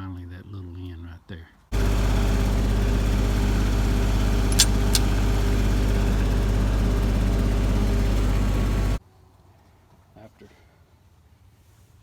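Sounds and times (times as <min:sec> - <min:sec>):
tractor engine running: 0:01.8 - 0:09.0
sharp metallic clicks: 0:04.2 - 0:08.4.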